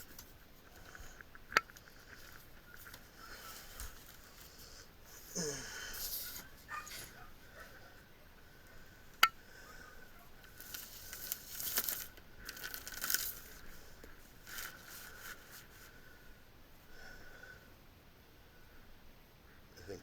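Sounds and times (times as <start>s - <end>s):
crinkling rustling noise: 0.0s - 5.3s, 10.0s - 16.4s.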